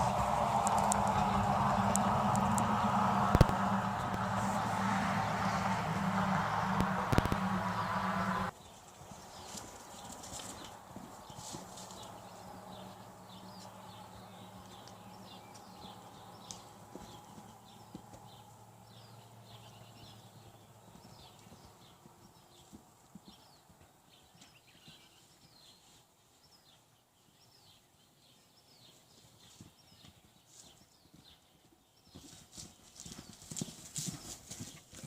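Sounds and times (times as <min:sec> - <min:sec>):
horse hoofbeats: 0:00.0 - 0:12.9, 0:14.7 - 0:18.6, 0:20.1 - 0:25.2, 0:29.4 - 0:35.0.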